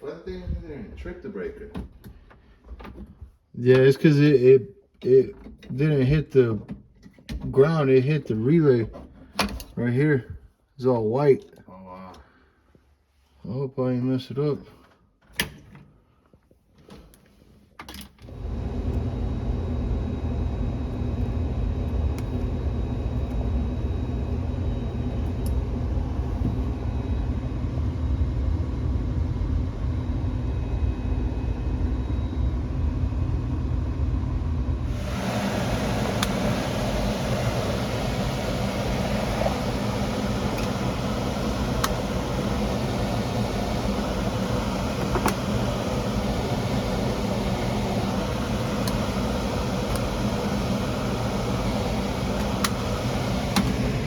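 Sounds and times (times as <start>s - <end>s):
low machine rumble: 18.3s - 54.0s.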